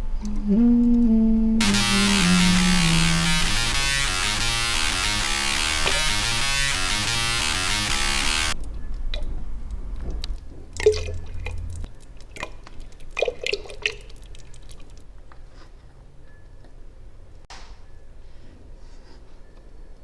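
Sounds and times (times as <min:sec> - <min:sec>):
dense ambient music: 0:01.6 - 0:11.9.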